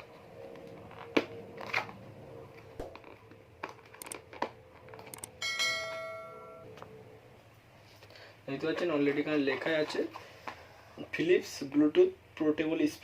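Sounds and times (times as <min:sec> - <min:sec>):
bell-like ringing tone: 0:05.4 - 0:06.7.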